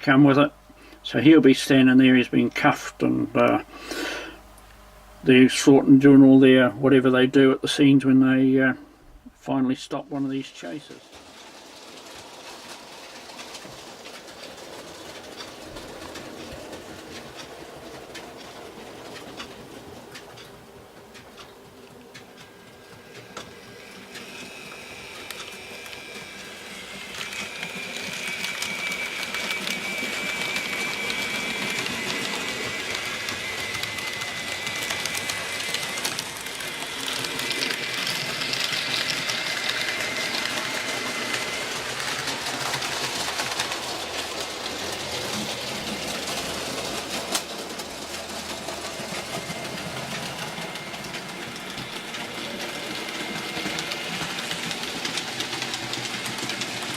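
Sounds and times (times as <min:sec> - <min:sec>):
small electric motor whining: 0:22.4 - 0:56.9.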